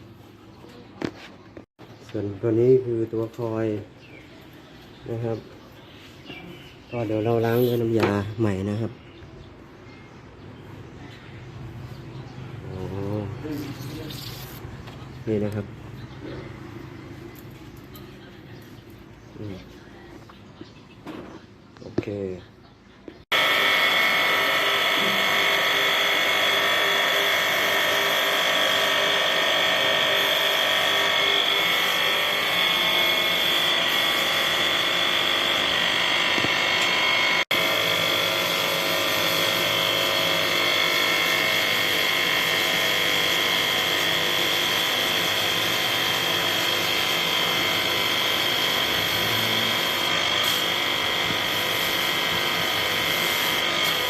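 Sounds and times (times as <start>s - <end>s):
small electric motor whining: 23.3s - 54.0s.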